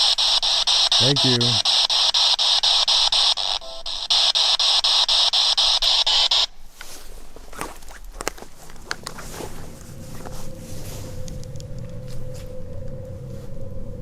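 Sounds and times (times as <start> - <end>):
snatch of radio station: 0.0 - 6.5
radio static sweeping: 0.0 - 6.6.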